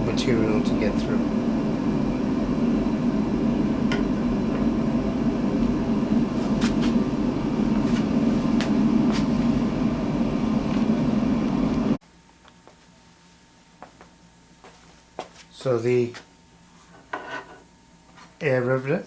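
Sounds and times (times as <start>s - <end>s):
motor droning: 0.0s - 12.0s.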